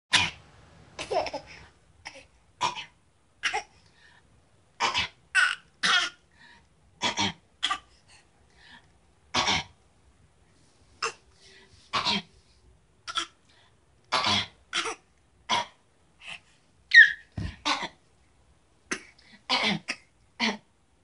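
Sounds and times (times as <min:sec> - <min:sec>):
baby giggling: 0:01.0 - 0:01.6
baby fake coughing: 0:01.0 - 0:03.8, 0:04.8 - 0:06.2, 0:07.0 - 0:08.0, 0:09.3 - 0:09.8, 0:11.0 - 0:11.2, 0:13.0 - 0:13.4, 0:14.1 - 0:15.8, 0:16.9 - 0:18.0, 0:18.9 - 0:20.6.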